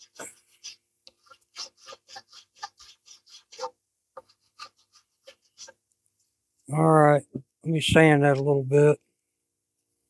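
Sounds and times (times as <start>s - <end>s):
needle file rasping: 0.0s - 5.8s.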